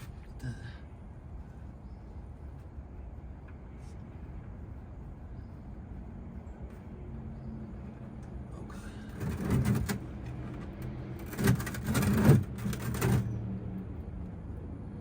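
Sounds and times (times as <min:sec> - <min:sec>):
steady low hum: 0:00.0 - 0:15.0
handling and rustling noise: 0:09.1 - 0:13.4.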